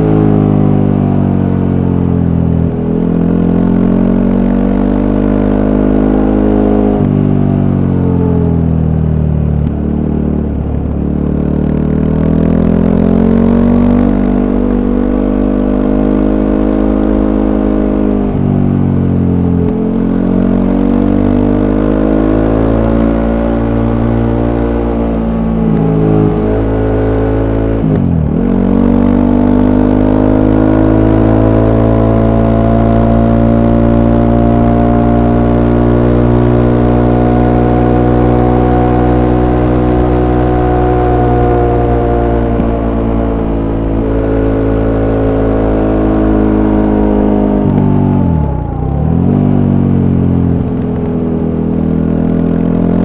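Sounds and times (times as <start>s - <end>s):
motorcycle engine revving: 0.0s - 53.0s.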